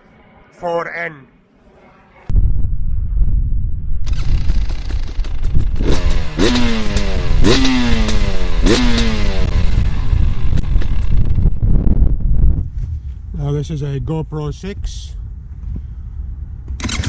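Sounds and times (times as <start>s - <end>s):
wind rumbling on microphone: 2.3s - 17.0s
two-stroke engine idling and revving: 4.1s - 11.6s.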